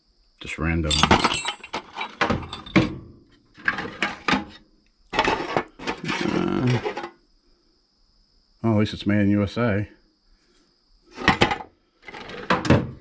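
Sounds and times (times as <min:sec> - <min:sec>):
metal tools clinking in a toolbox: 0:00.8 - 0:02.9, 0:05.2 - 0:07.1.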